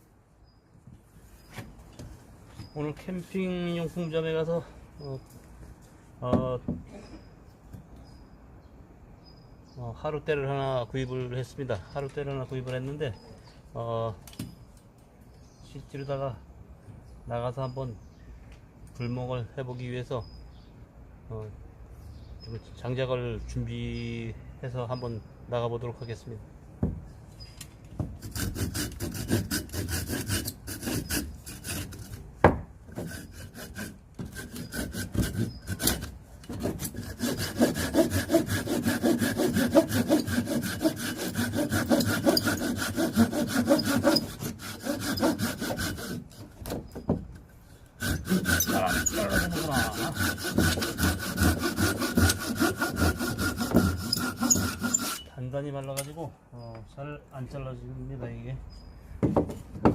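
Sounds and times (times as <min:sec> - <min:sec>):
hand saw cutting log: 0:28.2 - 0:32.3, 0:32.9 - 0:46.8, 0:48.0 - 0:55.3.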